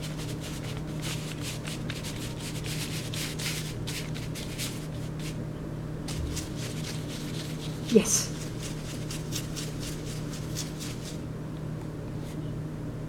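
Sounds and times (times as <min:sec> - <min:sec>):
steady low hum: 0:00.0 - 0:13.0
paint scratchy brush strokes: 0:06.1 - 0:11.2.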